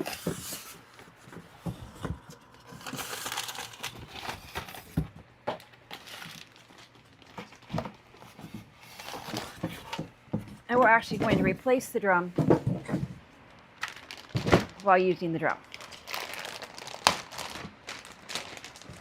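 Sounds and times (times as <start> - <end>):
packaging crinkling: 1.8 - 5.0, 5.6 - 10.0, 13.8 - 14.9, 15.6 - 19.0.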